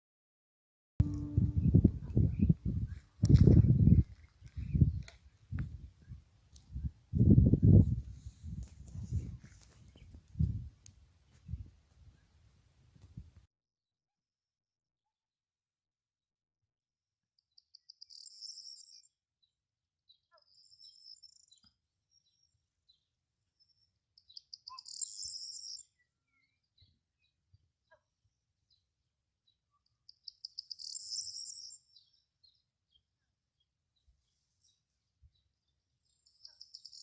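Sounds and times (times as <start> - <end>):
songbird singing: 1.0 - 3.0, 20.1 - 27.4, 29.5 - 37.0
faint bird chirps: 20.1 - 27.0, 29.5 - 37.0.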